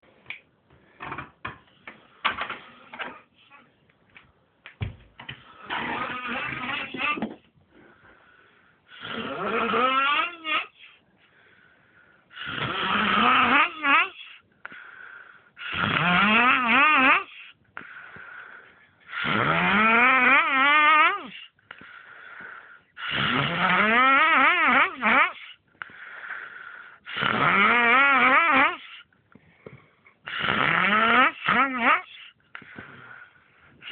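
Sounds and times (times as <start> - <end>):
quiet breathy sound: 7.4 - 9.4, 10.7 - 12.6, 14.1 - 15.7, 17.2 - 19.2, 21.3 - 23.1, 25.4 - 27.1, 28.8 - 30.3, 32.0 - 33.9
man snoring with warbling pitch: 8.9 - 10.7, 12.4 - 14.2, 19.1 - 21.4, 23.0 - 25.4, 27.1 - 28.9.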